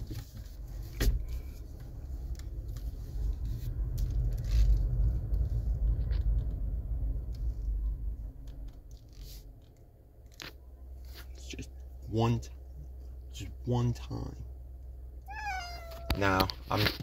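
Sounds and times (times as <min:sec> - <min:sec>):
handling clicks and scrapes: 0:00.0 - 0:06.6
car engine rumble inside cabin: 0:00.0 - 0:16.6.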